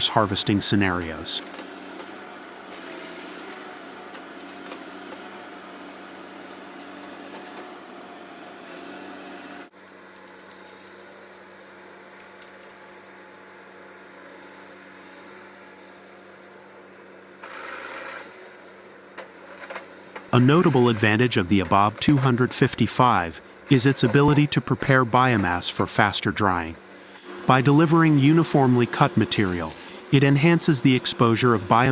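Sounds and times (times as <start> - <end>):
harvesting machinery droning: 20.4 - 31.9.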